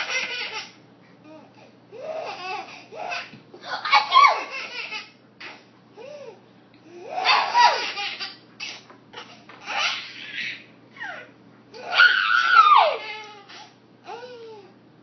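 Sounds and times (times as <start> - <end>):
baby laughing hysterically: 0.0 - 0.8, 2.1 - 5.6, 7.1 - 11.3.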